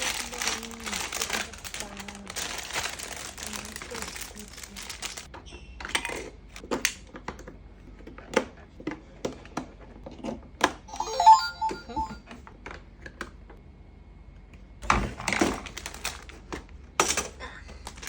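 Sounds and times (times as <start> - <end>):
electronic toy beeps: 10.9 - 12.2.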